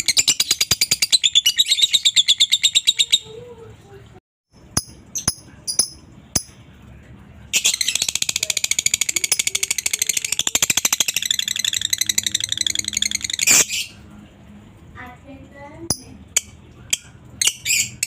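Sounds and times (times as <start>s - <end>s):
lovebird chattering: 4.7s - 6.6s, 7.6s - 14.0s.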